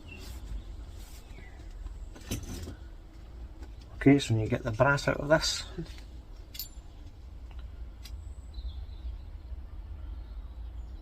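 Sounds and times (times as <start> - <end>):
low hum: 0.0 - 11.0
metal parts clicking: 6.5 - 6.8.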